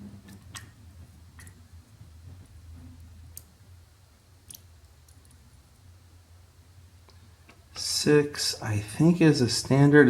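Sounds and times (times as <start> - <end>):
faint low hum: 0.0 - 10.0.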